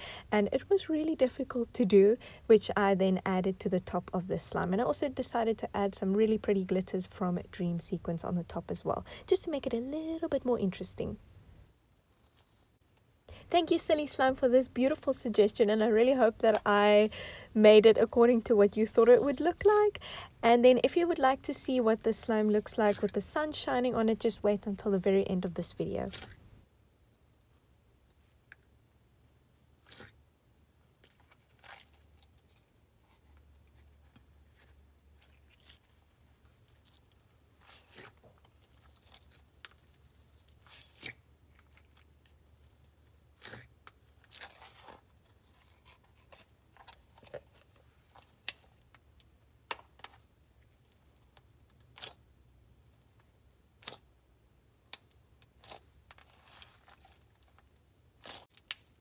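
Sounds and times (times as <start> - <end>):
slime crackling and popping: 54.9 - 59.0.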